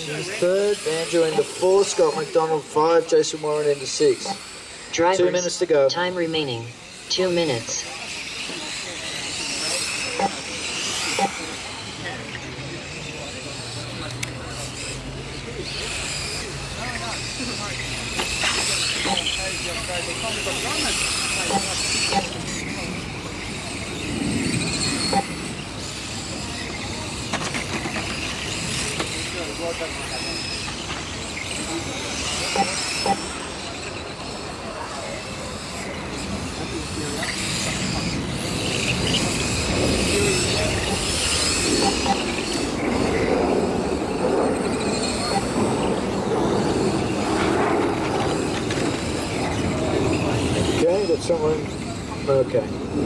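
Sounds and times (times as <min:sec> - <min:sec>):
electric motor whine: 0:00.0 - 0:51.9
tyre and track noise: 0:00.0 - 0:53.0.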